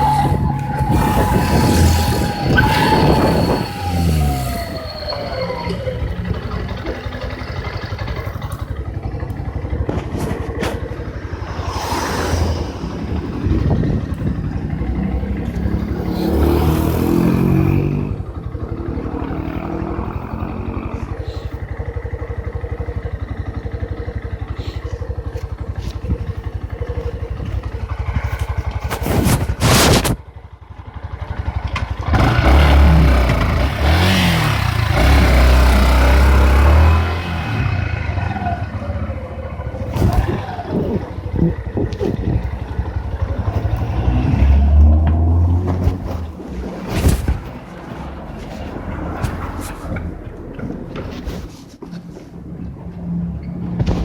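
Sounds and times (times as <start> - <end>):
thin steady whistle: 0.0 - 5.8
motorcycle engine revving: 0.0 - 54.0.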